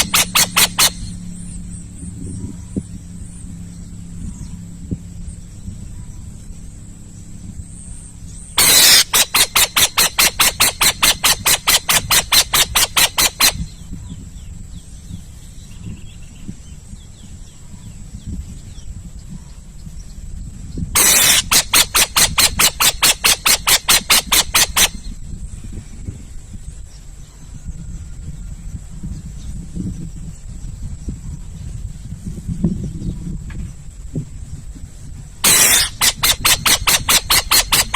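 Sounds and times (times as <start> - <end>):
owl rasping calls: 0.0 - 1.6, 8.5 - 14.1, 21.0 - 25.2, 35.4 - 37.9.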